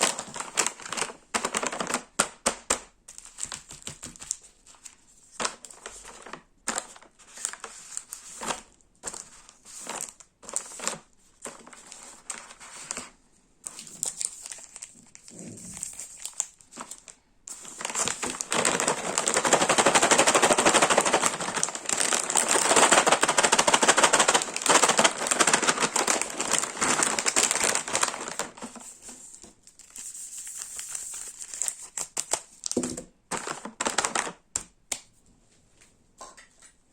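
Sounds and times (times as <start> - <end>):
snack packaging crinkling: 13.7 - 34.7.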